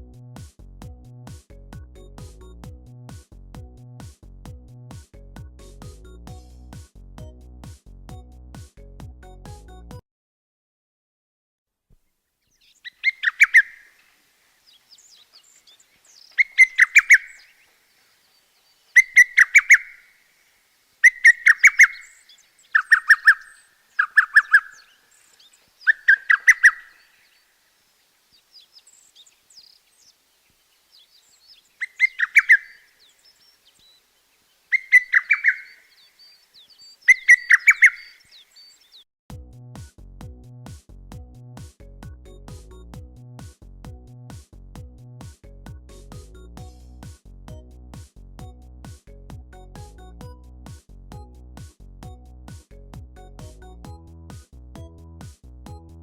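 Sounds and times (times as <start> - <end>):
bird singing: 12.4 - 14.0, 14.7 - 20.2, 21.0 - 27.6, 28.4 - 39.1.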